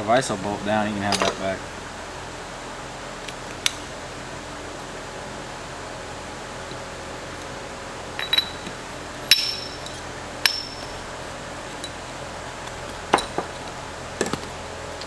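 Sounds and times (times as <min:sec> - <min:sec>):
fan hum: 0:00.0 - 0:15.0
metal tools clinking: 0:01.0 - 0:01.6, 0:08.2 - 0:15.0
sharp ringing metallic knocks: 0:08.2 - 0:11.1.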